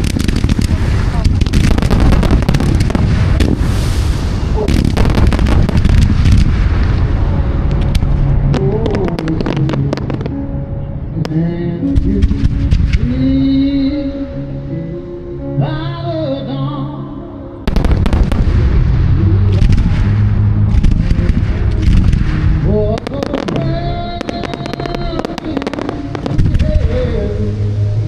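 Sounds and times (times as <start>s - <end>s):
fireworks crackling and banging: 0.0s - 10.4s, 12.0s - 13.1s, 17.7s - 27.5s
music: 5.2s - 28.0s.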